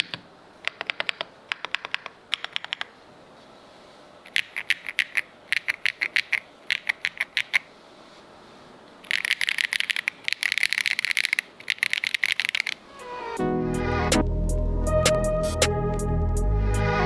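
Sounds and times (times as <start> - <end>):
mechanical keyboard typing: 0.0 - 2.9, 4.3 - 7.6, 9.1 - 12.8.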